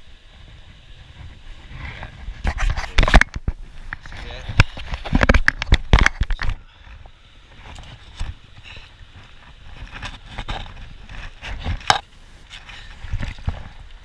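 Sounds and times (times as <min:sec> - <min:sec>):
knocks and scrapes on rocks: 0:00.4 - 0:14.0.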